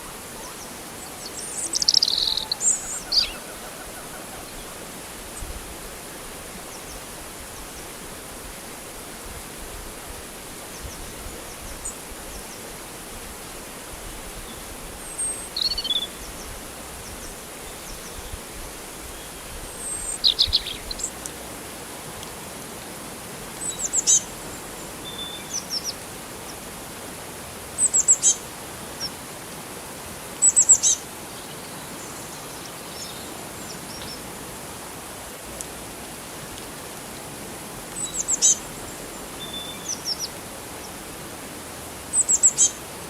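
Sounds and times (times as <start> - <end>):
birds chirping: 0.0 - 4.8
flowing water hiss: 0.0 - 43.0.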